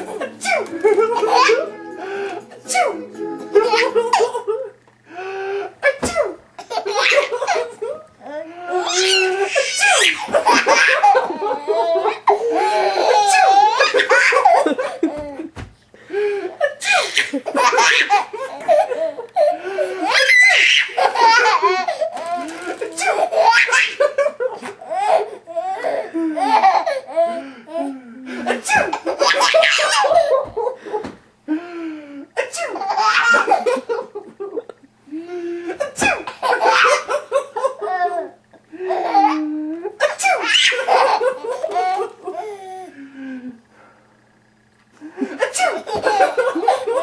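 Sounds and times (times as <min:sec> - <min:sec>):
baby belly laughing: 0:00.0 - 0:01.7, 0:02.3 - 0:04.8, 0:05.8 - 0:15.5, 0:16.6 - 0:30.8, 0:32.6 - 0:34.8, 0:35.7 - 0:42.6, 0:45.2 - 0:47.0
man sneezing: 0:28.3 - 0:29.0, 0:45.4 - 0:45.9.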